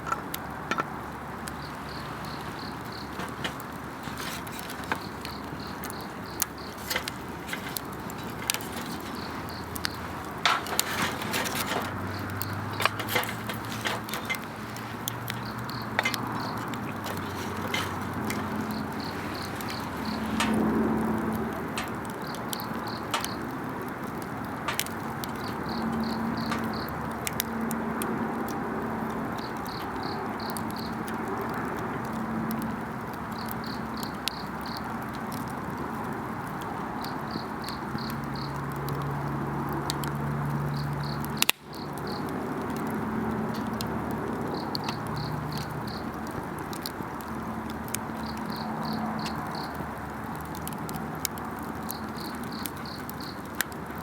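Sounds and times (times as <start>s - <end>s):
campfire crackling and popping: 0.0s - 54.0s
insects chirping in trills: 1.3s - 23.6s, 24.4s - 27.0s, 44.4s - 46.1s, 48.0s - 49.8s, 51.9s - 53.4s.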